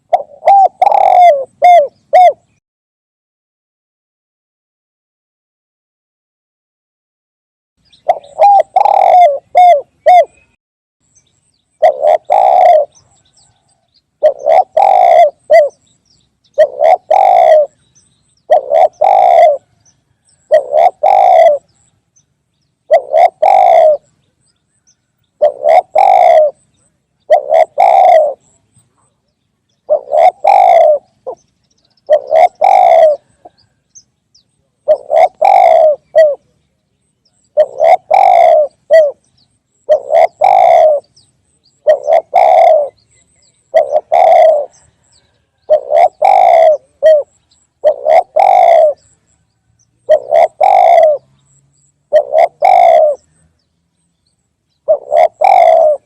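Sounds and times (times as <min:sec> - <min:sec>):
dove cooing: 0:00.0 - 0:02.6, 0:07.9 - 0:10.5, 0:11.8 - 0:15.9, 0:16.5 - 0:21.9, 0:22.9 - 0:33.9, 0:34.6 - 0:36.6, 0:37.2 - 0:49.2, 0:50.0 - 0:53.6, 0:54.8 - 0:56.0.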